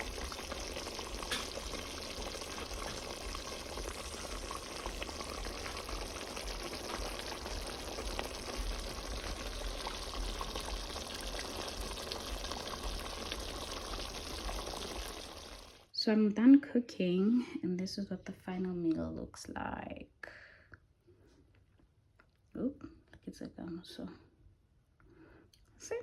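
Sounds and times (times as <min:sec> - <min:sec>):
meat hissing in a pot: 0:00.0 - 0:15.8.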